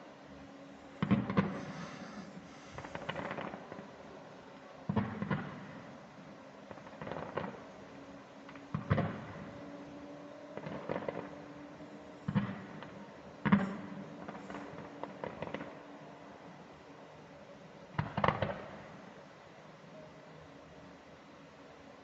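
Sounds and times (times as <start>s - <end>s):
fireworks crackling: 0.8s - 16.3s, 17.9s - 19.2s
fireworks bangs: 1.0s - 4.0s, 4.8s - 15.9s, 17.9s - 19.0s.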